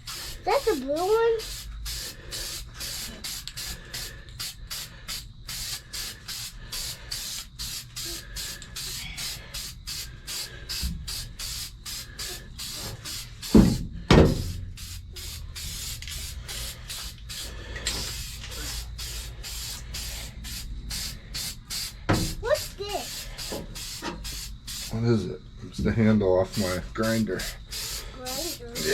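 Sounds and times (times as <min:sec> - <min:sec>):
spray paint hissing in bursts: 0:00.0 - 0:25.0, 0:26.4 - 0:28.9
loud thumps: 0:13.5 - 0:14.7.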